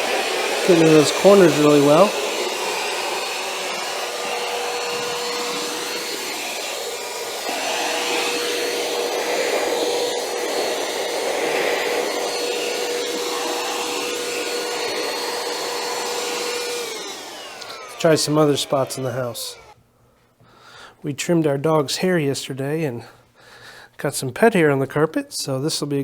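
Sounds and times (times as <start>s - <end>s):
air rushing through nozzle: 0.0s - 16.6s
handheld vacuum motor whine: 0.0s - 19.8s.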